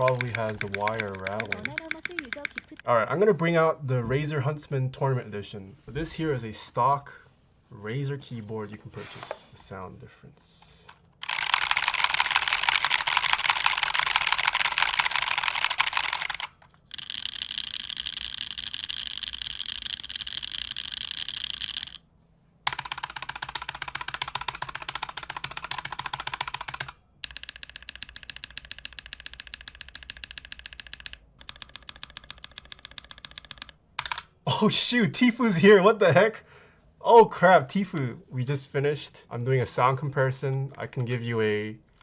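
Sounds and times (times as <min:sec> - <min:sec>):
fast typing on keyboards: 0:00.0 - 0:02.8, 0:11.2 - 0:22.0, 0:22.7 - 0:34.3.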